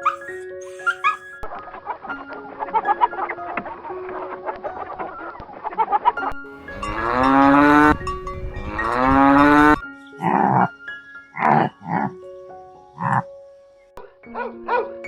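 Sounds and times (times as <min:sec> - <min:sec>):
soft background music: 0:00.0 - 0:15.0
cow mooing: 0:06.6 - 0:08.0, 0:08.6 - 0:10.7.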